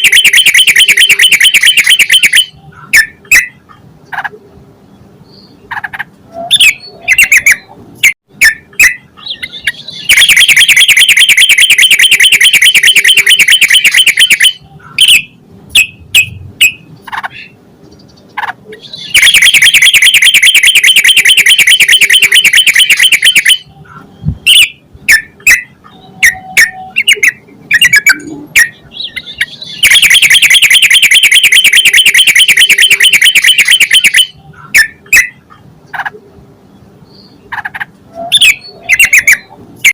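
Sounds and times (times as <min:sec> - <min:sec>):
bird sharp calls: 0:08.4 - 0:11.0, 0:12.8 - 0:36.2, 0:37.1 - 0:39.9
bird rapid chattering: 0:08.4 - 0:36.1, 0:37.5 - 0:39.9.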